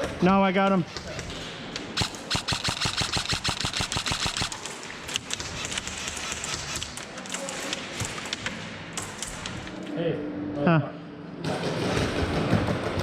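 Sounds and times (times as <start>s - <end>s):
single shots and bb impacts: 2.0s - 4.6s
airsoft gun firing rapid burst: 2.0s - 4.7s.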